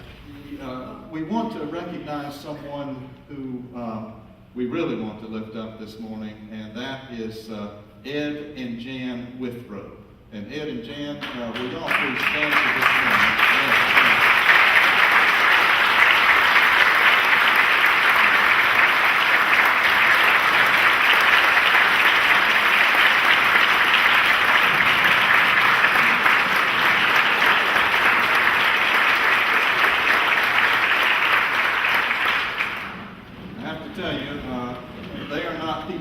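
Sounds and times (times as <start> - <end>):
congregation applauding: 11.2 - 33.4.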